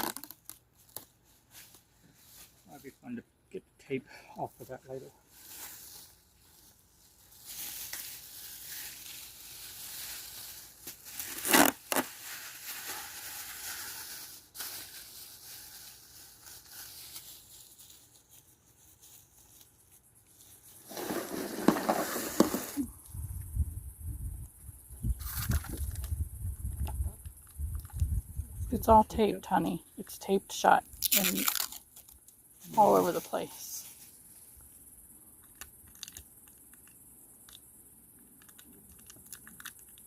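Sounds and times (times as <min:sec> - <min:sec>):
cardboard and tape crinkling: 0:00.0 - 0:02.6, 0:05.4 - 0:22.9, 0:31.0 - 0:33.3.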